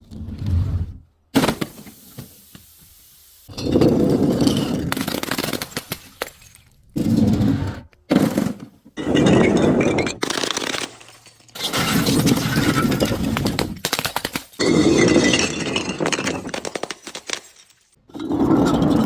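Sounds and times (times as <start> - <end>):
objects crunching and cracking: 8.2 - 19.0.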